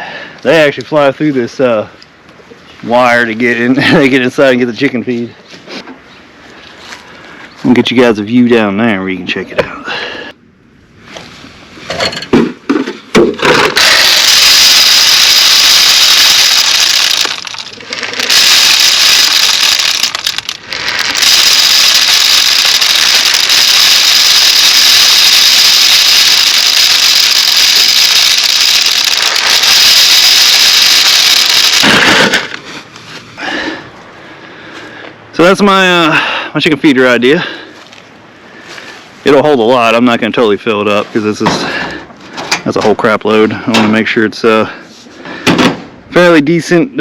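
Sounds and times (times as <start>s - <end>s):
dry feed pouring through pipe: 13.8s - 32.6s.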